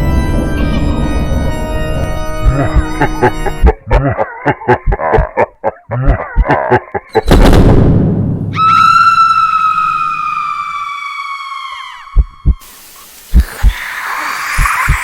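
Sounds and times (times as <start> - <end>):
loud boom: 7.2 - 9.0
high-pitched shriek: 8.5 - 12.4.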